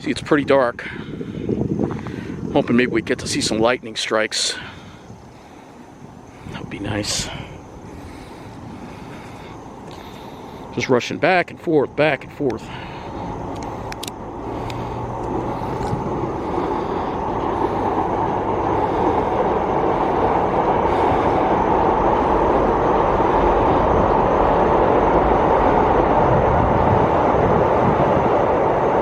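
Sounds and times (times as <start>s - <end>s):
thunder rumbling: 4.6s - 10.8s, 12.6s - 29.0s.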